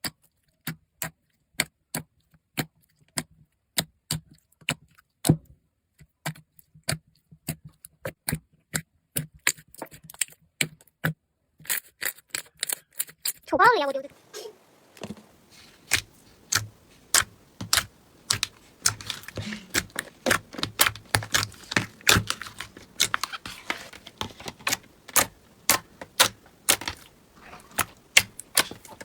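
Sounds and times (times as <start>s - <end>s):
crunchy slime crackling: 14.1s - 29.0s.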